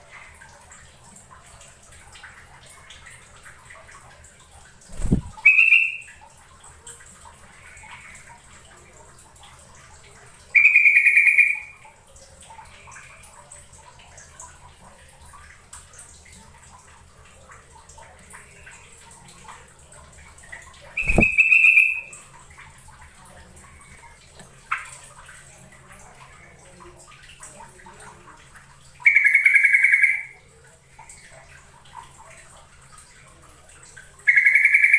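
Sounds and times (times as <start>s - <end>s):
bulbul calling: 5.0s - 6.1s, 21.0s - 22.1s.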